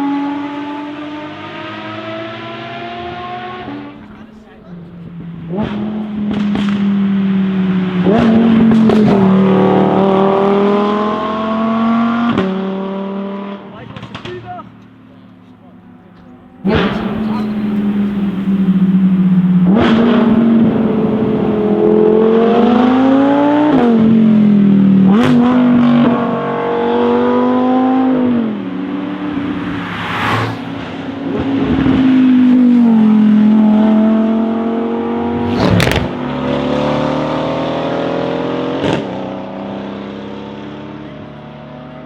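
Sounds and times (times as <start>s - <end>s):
sports car engine accelerating: 0.0s - 14.2s, 14.8s - 42.0s
exhaust cracks on upshifts: 13.8s - 26.4s, 35.1s - 36.9s.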